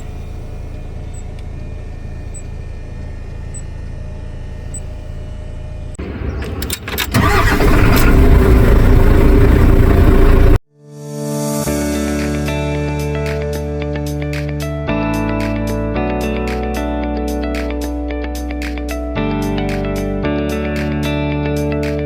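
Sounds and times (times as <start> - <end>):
faint high chirp: 0.0 - 2.6, 3.5 - 3.8
diesel truck engine starting: 0.0 - 10.6
low hum: 0.0 - 10.6.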